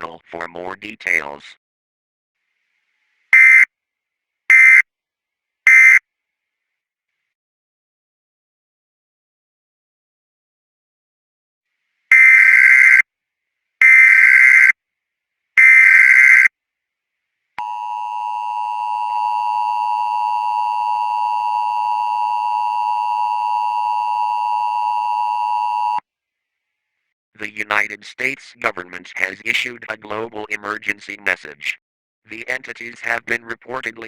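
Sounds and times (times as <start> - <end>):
alert data bursts: 12.1 - 13.0, 13.8 - 14.7, 15.6 - 16.5
two-tone attention signal: 17.6 - 26.0.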